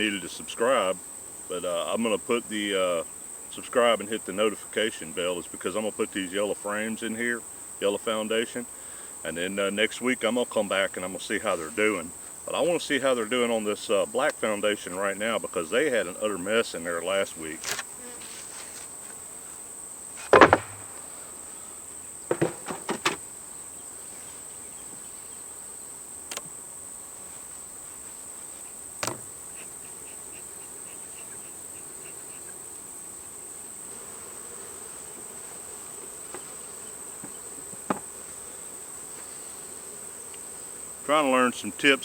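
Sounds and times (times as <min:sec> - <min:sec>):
wooden hive parts knocking: 0:20.2 - 0:21.1, 0:22.3 - 0:23.3, 0:29.0 - 0:29.4, 0:37.2 - 0:38.1.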